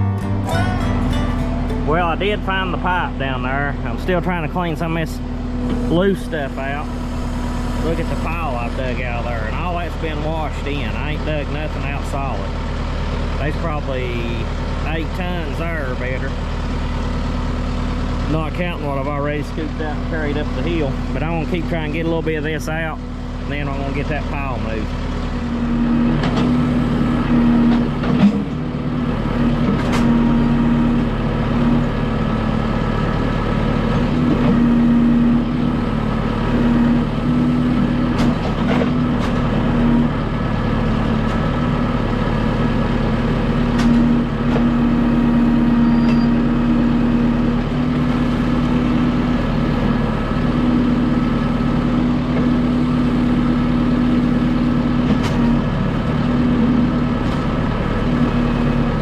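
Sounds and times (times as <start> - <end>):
backhoe whine: 0.0 - 11.3, 24.5 - 59.0
tractor diesel engine running: 0.0 - 59.0.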